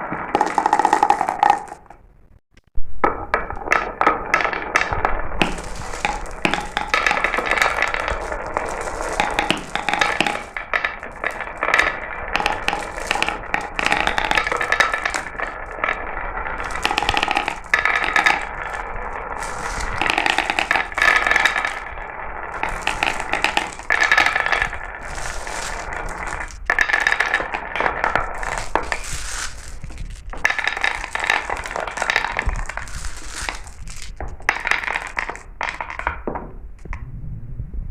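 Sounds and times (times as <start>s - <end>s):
marbles rolling and clicking: 0.0s - 2.1s, 3.0s - 37.0s.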